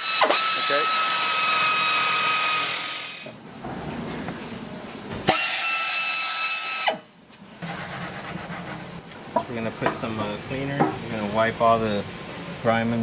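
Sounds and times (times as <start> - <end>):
pneumatic tool hiss and whine: 0.0 - 3.4, 5.3 - 7.1.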